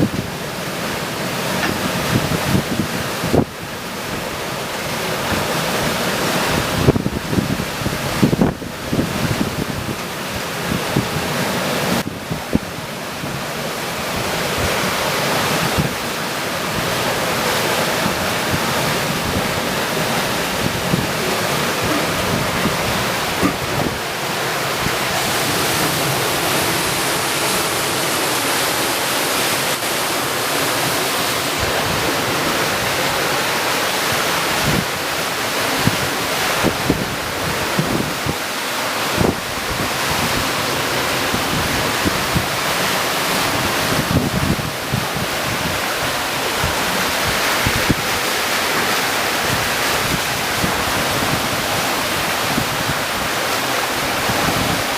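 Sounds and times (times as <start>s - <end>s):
water rushing past hulls: 0.0s - 54.9s
wind buffeting microphone: 1.7s - 3.7s, 6.4s - 11.3s, 16.7s - 33.4s, 34.0s - 34.9s, 35.8s - 42.8s, 43.4s - 48.3s.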